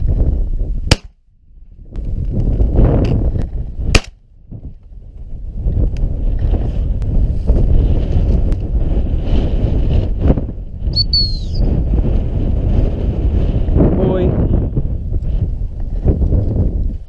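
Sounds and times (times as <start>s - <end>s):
wind buffeting microphone: 0.0s - 17.0s
falling high whistle tone: 10.9s - 11.6s.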